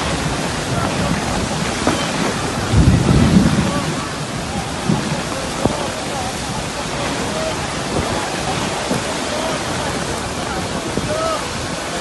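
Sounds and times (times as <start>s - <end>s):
heavy rain pouring: 0.0s - 12.0s
strong wind: 0.0s - 12.0s
low rumble: 2.4s - 5.0s.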